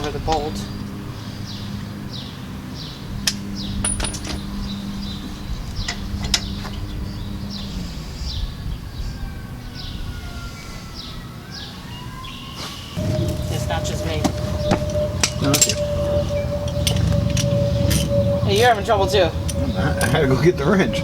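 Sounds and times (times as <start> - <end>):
high chirps: 13.0 - 21.0
low steady hum: 13.0 - 21.0.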